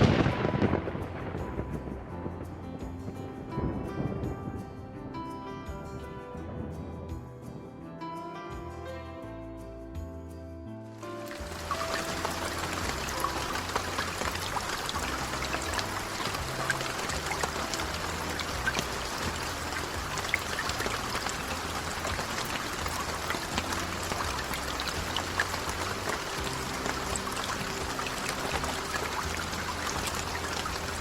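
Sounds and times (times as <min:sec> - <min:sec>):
steady rain: 0:00.0 - 0:03.5, 0:11.2 - 0:31.0
soft background music: 0:00.0 - 0:31.0.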